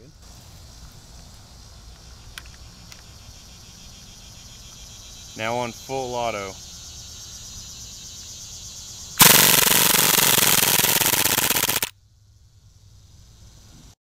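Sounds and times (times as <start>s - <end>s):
airsoft pistol full-auto burst: 9.2s - 11.9s.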